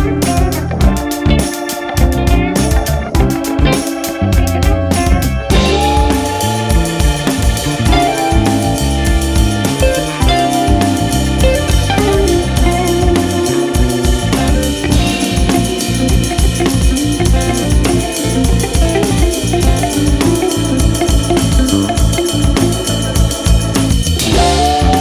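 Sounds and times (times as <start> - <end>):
background music with drum beat: 0.0 - 25.0
keyboard music: 0.0 - 25.0.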